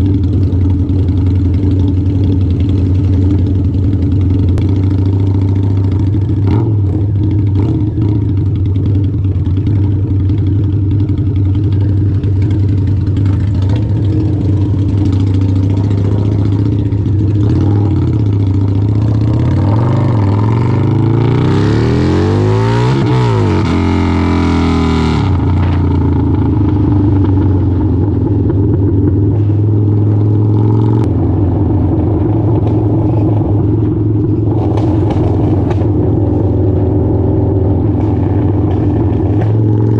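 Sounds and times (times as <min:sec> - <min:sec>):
motorcycle engine idling: 0:00.0 - 0:22.5, 0:25.2 - 0:39.9.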